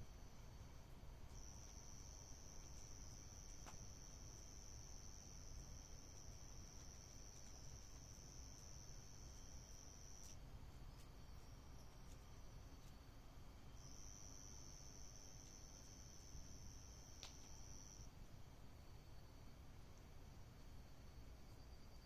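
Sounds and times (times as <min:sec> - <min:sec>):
cricket trilling: 0:01.3 - 0:10.4, 0:13.7 - 0:18.1.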